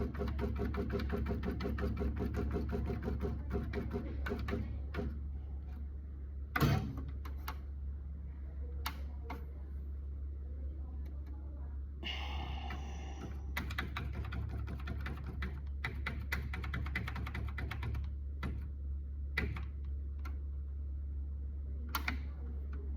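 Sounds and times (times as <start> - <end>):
typewriter motor hum: 0.0 - 5.3, 12.6 - 19.8.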